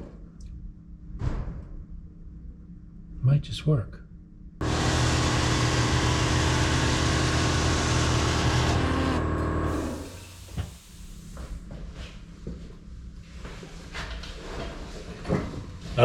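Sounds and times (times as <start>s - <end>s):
air compressor running: 4.6s - 11.5s.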